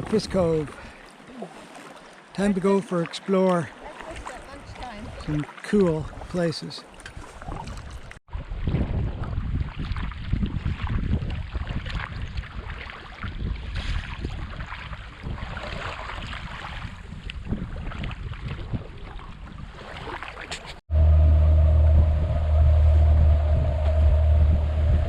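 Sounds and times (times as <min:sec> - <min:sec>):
seawater rushing and splashing: 0:00.0 - 0:08.8
wind buffeting microphone: 0:07.0 - 0:25.0.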